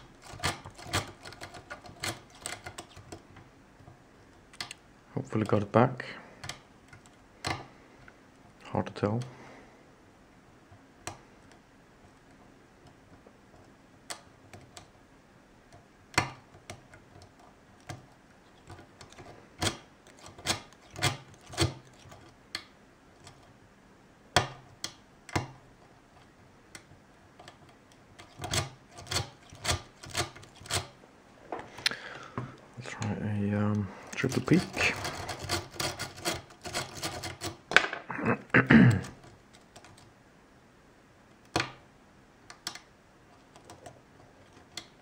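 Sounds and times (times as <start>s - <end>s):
lock pick clicking pins: 0.0s - 3.2s, 42.5s - 42.9s.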